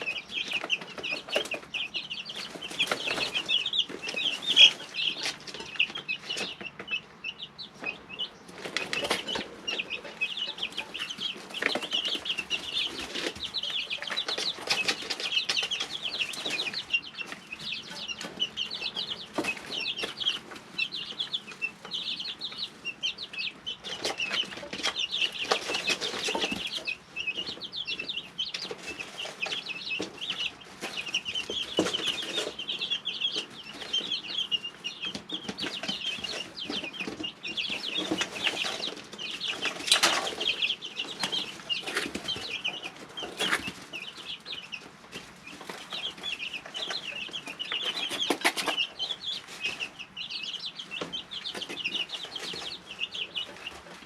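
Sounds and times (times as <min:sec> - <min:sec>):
chicks peeping: 0:00.0 - 0:54.0.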